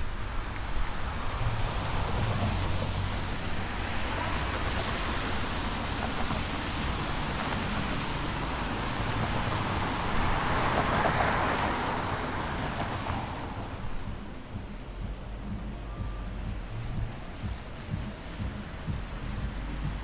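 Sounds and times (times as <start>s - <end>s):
rushing vehicle noise: 0.0s - 20.0s
low hum: 13.6s - 20.0s.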